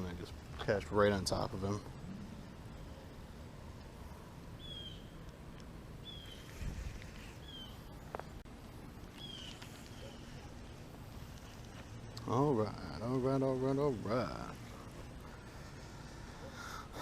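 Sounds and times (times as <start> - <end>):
bird chirping: 4.0 - 5.3, 6.0 - 8.4, 9.1 - 10.5
wind on microphone: 6.4 - 7.6.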